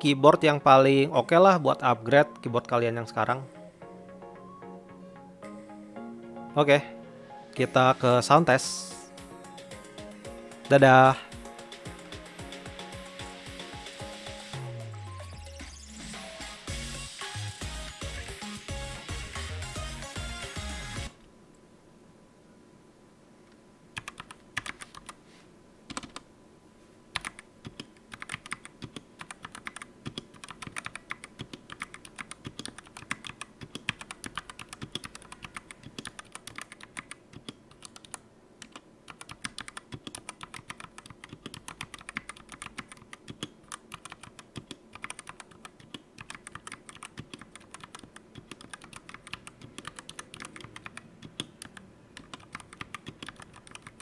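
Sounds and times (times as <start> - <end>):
mechanical keyboard typing: 24.0 - 25.2, 25.9 - 26.2, 27.2 - 54.0.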